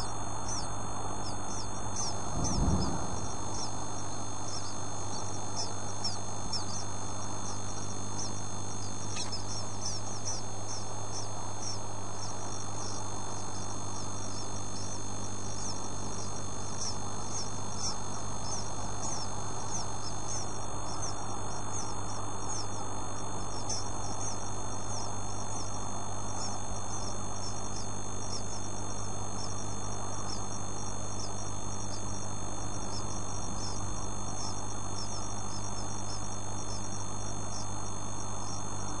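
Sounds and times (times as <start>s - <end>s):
low electrical hum and hiss: 0.0s - 39.0s
bird nestlings cheeping: 0.5s - 7.6s, 8.2s - 13.0s.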